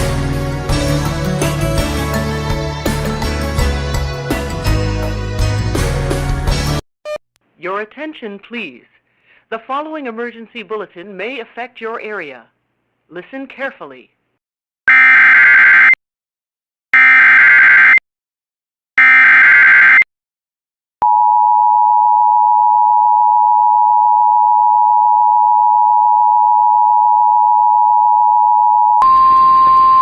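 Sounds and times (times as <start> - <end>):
single steady tone: 21.0 - 30.0.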